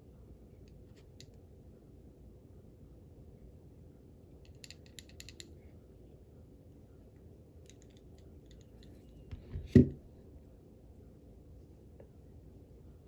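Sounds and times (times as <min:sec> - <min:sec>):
metallic clicks of a padlock: 0:04.5 - 0:05.5.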